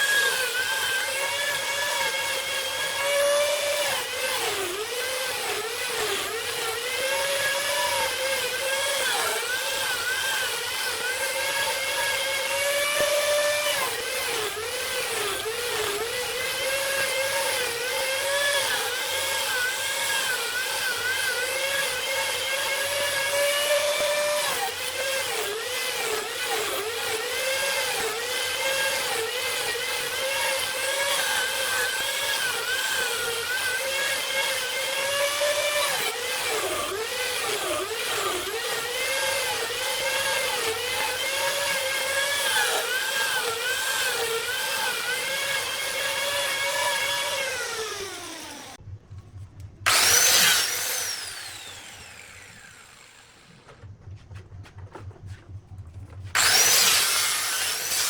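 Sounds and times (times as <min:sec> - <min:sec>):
power tool whining cutting wood: 0:00.0 - 0:48.8, 0:49.8 - 0:53.9, 0:56.1 - 0:58.0
loud tool burst: 0:49.8 - 0:53.7, 0:56.4 - 0:58.0.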